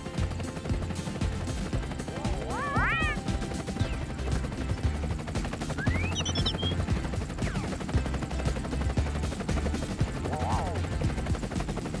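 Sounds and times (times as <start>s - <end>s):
chirpy tones: 5.5s - 8.8s
rising whistle: 5.8s - 6.8s.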